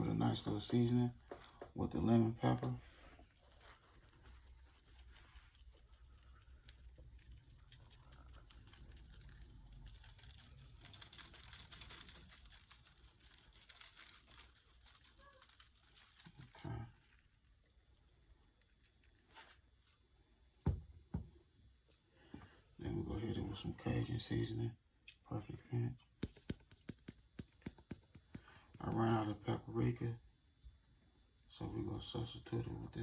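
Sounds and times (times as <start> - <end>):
seasoning granules pattering: 3.0 - 19.3.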